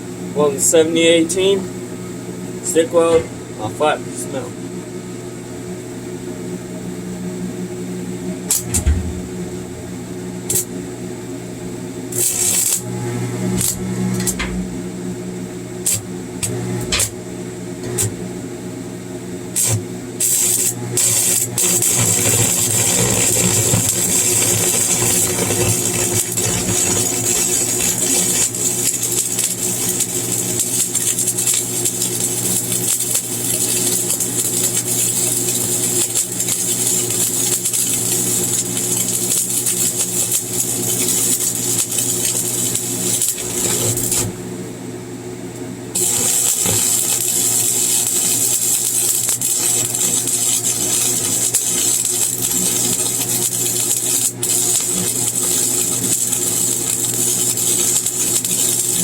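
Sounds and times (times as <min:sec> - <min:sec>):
welding machine hum: 0:08.1 - 0:59.0
welding arc crackling and hissing: 0:08.4 - 0:10.9, 0:12.0 - 0:15.0, 0:15.7 - 0:17.2, 0:17.8 - 0:18.2, 0:19.4 - 0:44.6, 0:45.6 - 0:59.0.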